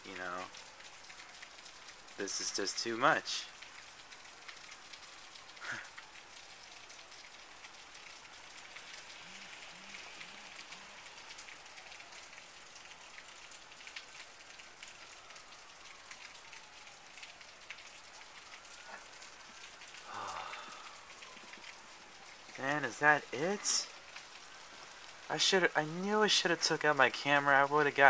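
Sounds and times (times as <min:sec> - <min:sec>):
raindrops pattering on surfaces: 0:00.0 - 0:28.0
steady rain falling: 0:00.0 - 0:28.0.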